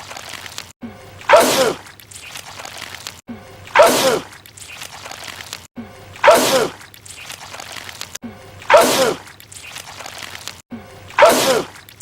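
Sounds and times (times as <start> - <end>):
man sneezing: 8.7 - 9.2, 11.2 - 11.7.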